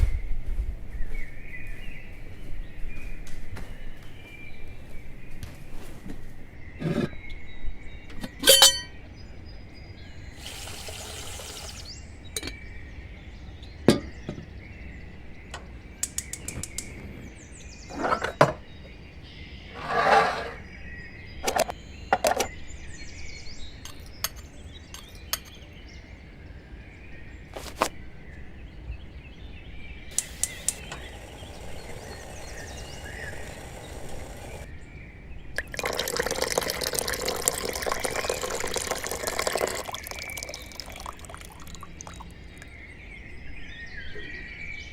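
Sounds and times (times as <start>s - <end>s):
water running: 10.4s - 12.0s, 30.1s - 34.7s, 35.6s - 42.5s
faint chirps: 30.1s - 34.7s.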